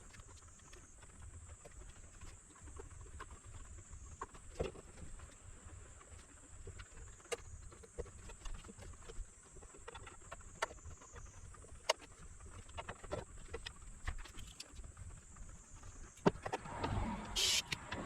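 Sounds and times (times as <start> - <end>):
small tools clicking and tapping: 11.8 - 14.8.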